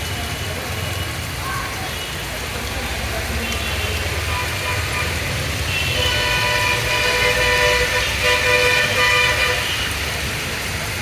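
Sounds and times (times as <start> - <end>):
road traffic rumble: 0.0 - 11.0
vehicle horns blasting: 4.3 - 10.0.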